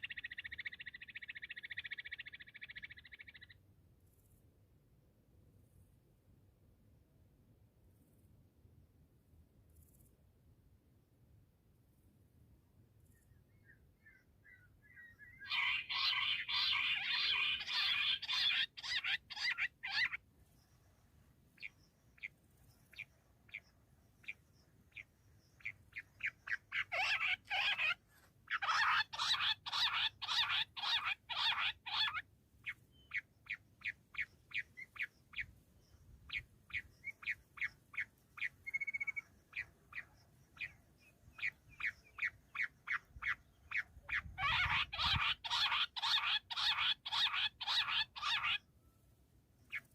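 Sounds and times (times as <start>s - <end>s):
quail calling: 13.6s - 20.2s, 24.2s - 35.5s, 41.4s - 48.7s.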